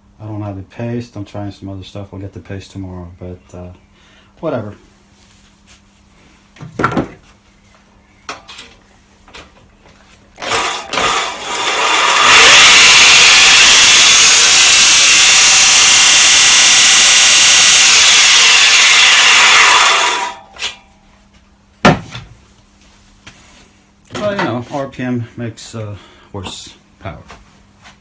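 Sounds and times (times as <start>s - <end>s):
drill spinning mower reel grinding: 10.4s - 20.7s.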